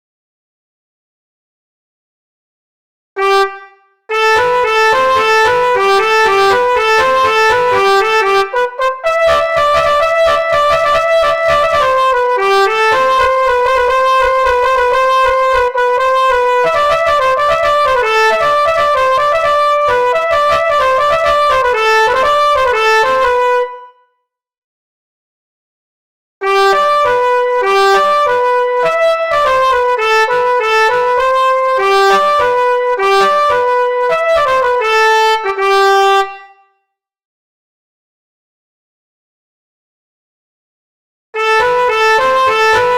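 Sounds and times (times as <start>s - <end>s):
horn-like synth melody: 3.2s - 24.0s, 26.4s - 36.7s, 41.4s - 42.9s.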